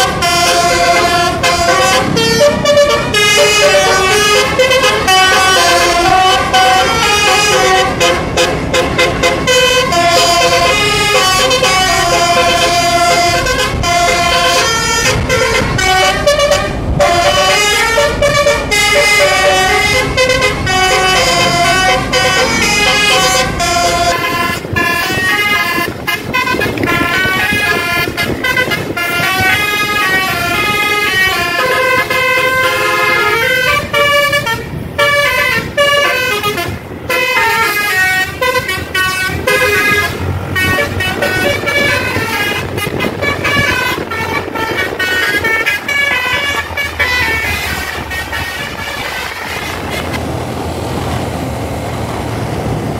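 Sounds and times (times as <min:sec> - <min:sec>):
musical air horn melody: 0:00.0 - 0:50.3.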